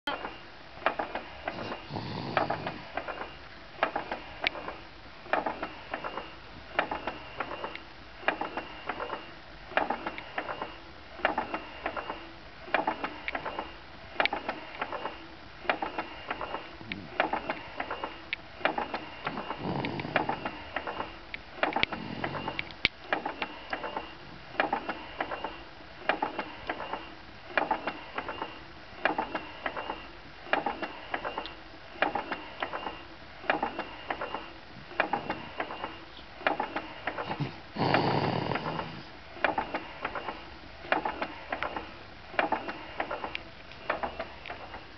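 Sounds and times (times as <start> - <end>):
motorized baby swing clicking: 0.1 - 44.9
baby snoring: 1.5 - 3.0, 19.3 - 20.6, 21.9 - 22.6, 37.2 - 39.1.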